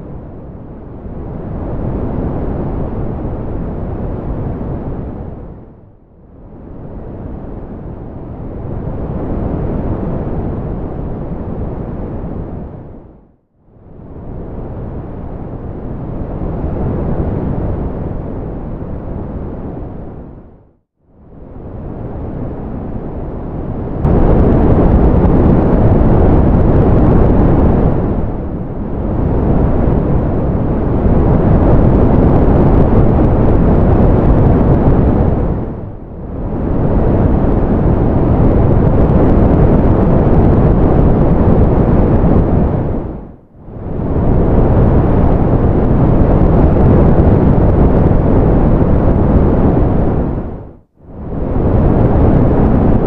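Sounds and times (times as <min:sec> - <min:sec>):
ocean surf rumble: 0:21.3 - 0:53.0.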